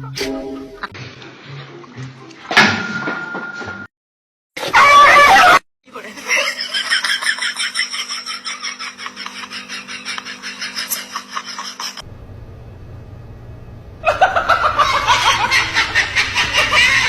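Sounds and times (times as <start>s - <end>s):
loud high-pitched laughter: 4.6s - 12.0s, 14.0s - 17.0s
person laughing: 6.0s - 12.0s, 14.0s - 17.0s.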